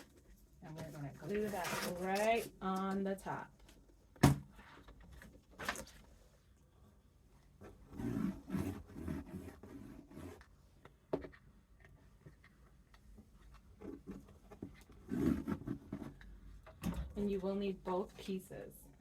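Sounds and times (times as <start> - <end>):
paper crinkling and rustling: 0.9 - 3.0.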